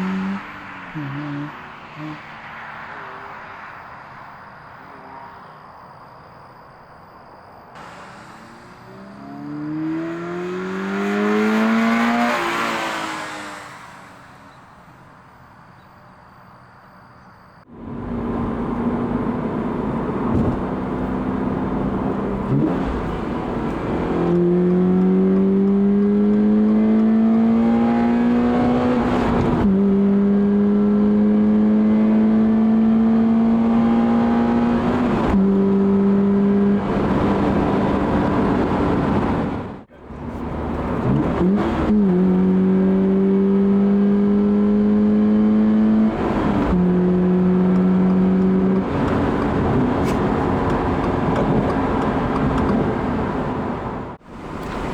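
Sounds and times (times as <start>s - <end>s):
car engine induction noise: 2.6s - 54.9s
engine accelerating hard: 8.4s - 14.4s, 17.9s - 54.0s.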